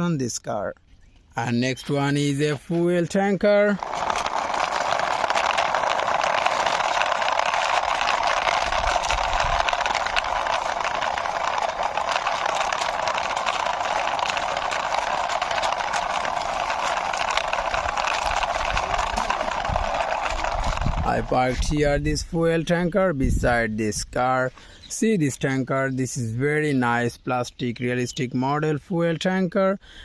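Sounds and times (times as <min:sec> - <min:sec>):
toy wheels rattling on rough wall: 0:02.0 - 0:24.1.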